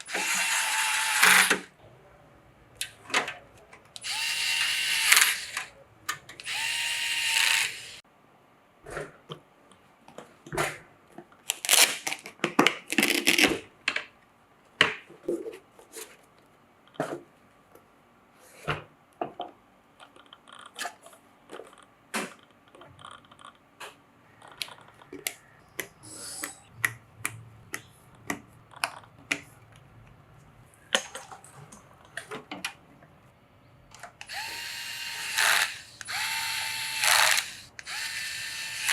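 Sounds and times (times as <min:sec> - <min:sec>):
electric screwdriver whirring: 0:00.0 - 0:01.7, 0:04.0 - 0:05.7, 0:06.4 - 0:08.0, 0:34.3 - 0:38.9.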